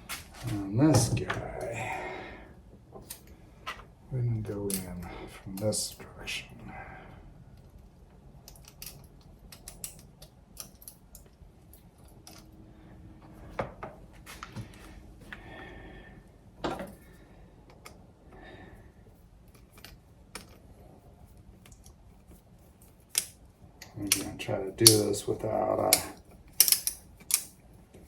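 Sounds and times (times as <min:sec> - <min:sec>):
clicks and crinkles of aluminium shim: 0:22.7 - 0:27.6.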